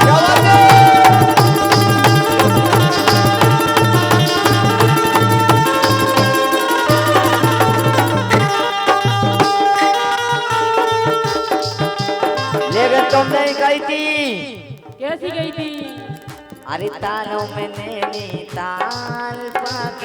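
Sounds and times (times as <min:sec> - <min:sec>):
melodic instrument playing: 0:00.0 - 0:13.4
hand drum rhythm: 0:00.0 - 0:20.0.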